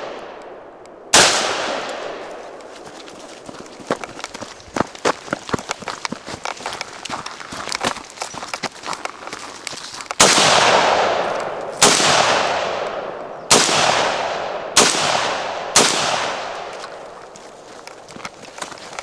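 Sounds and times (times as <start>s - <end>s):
rifle shots with long echo: 0.0s - 3.1s, 10.2s - 17.4s
light footsteps: 1.6s - 13.4s, 15.1s - 19.0s.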